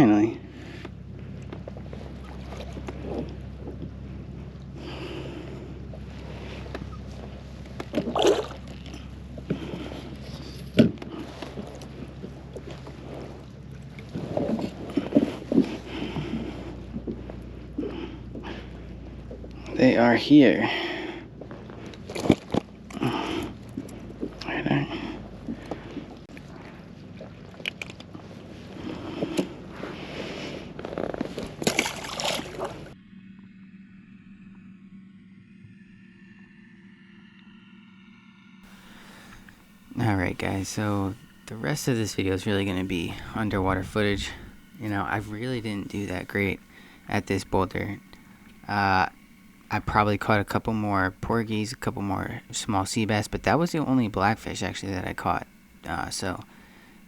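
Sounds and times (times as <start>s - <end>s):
steady low hum: 0.0s - 57.0s
water splashing: 4.8s - 19.8s, 31.4s - 33.0s.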